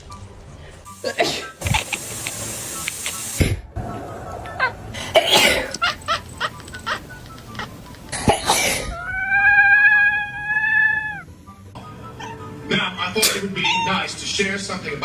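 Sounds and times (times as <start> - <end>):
sneeze-like bursts: 1.0 - 1.7, 5.0 - 5.8, 8.2 - 8.9
cat meowing: 8.9 - 11.3, 13.5 - 14.2.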